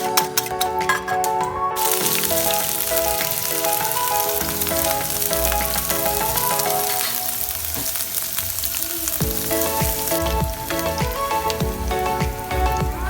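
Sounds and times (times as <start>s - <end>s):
background music: 0.0s - 13.0s
food sizzling: 1.8s - 13.0s
steady drum beat: 9.2s - 13.0s.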